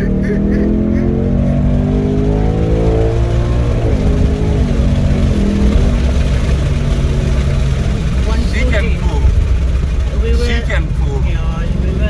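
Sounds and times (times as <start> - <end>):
car engine accelerating hard: 0.0 - 12.0.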